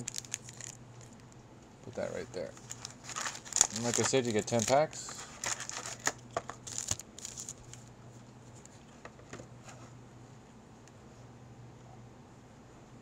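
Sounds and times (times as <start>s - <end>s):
foil wrapper crinkling and tearing: 0.0s - 1.2s, 2.0s - 7.9s
steady low hum: 0.0s - 13.0s.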